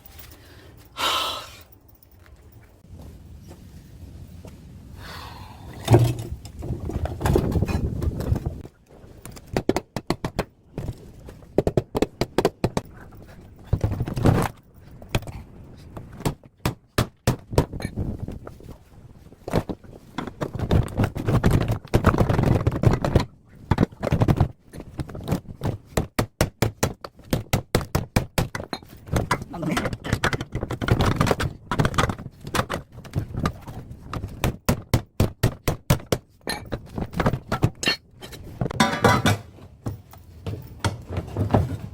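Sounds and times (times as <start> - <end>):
scraping of machine parts: 37.8 - 39.7.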